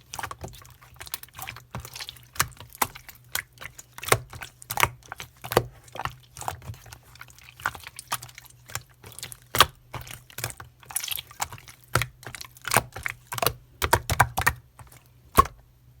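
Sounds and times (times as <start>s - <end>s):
slime clicking and popping: 7.6s - 15.6s.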